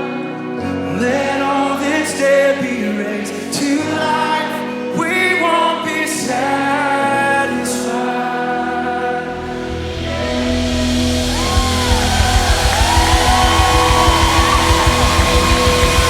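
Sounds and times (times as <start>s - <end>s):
people singing: 0.0s - 10.6s
sustained keyboard chords: 0.0s - 16.0s
cymbal swells: 9.3s - 16.0s.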